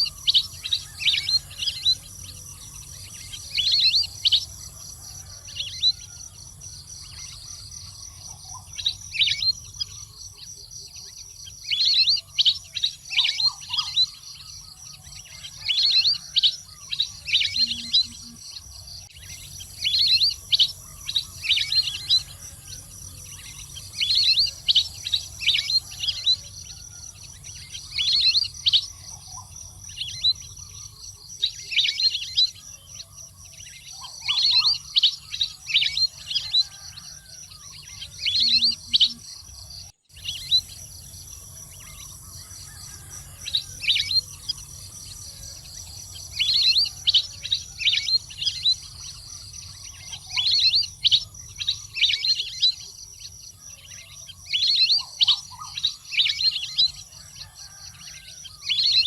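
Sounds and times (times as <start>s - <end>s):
high insect drone: 0.0s - 59.0s
waterbird chirps: 33.8s - 39.5s.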